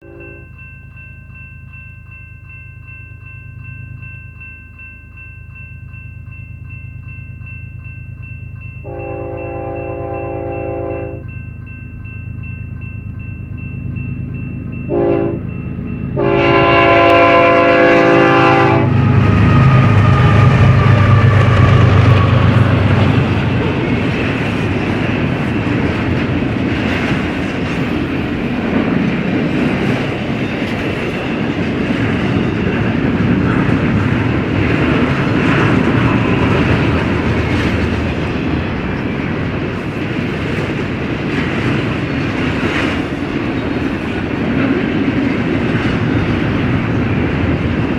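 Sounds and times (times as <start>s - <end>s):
diesel locomotive engine rumbling: 0.0s - 47.9s
train wheels clacking on rails: 6.3s - 47.9s
locomotive air horn: 8.8s - 11.2s, 14.9s - 15.4s, 16.2s - 21.9s
freight cars rumbling: 11.7s - 47.9s.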